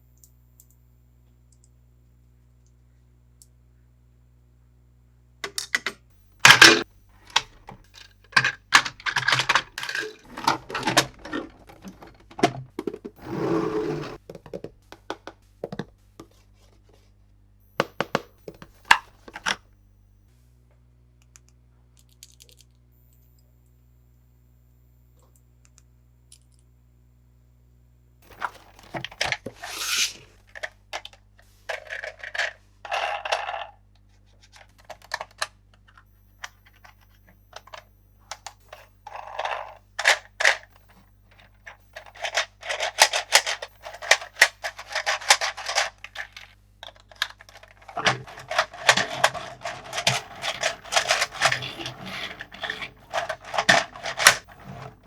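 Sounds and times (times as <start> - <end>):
packaging rustling and crinkling: 40.0 - 55.0.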